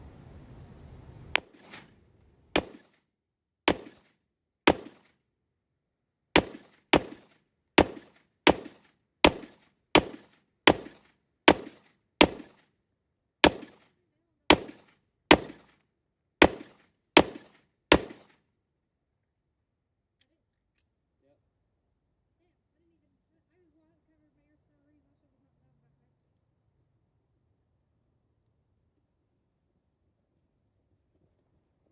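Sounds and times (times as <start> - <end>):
airsoft gun shots: 1.3 - 3.0, 3.7 - 4.1, 4.7 - 5.1, 6.4 - 12.6, 13.4 - 13.9, 14.5 - 15.8, 16.4 - 18.3.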